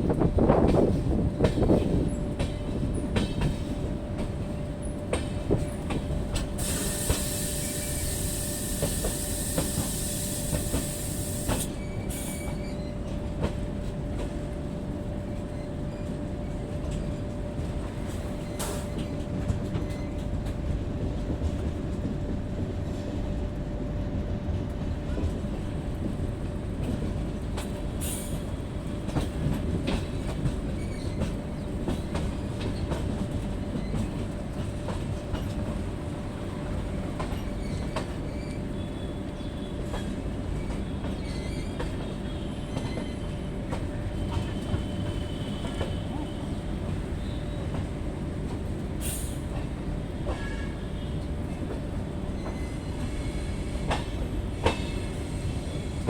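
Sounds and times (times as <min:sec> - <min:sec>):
train coaches rumbling: 0:00.0 - 0:56.0
hiss: 0:06.6 - 0:12.4.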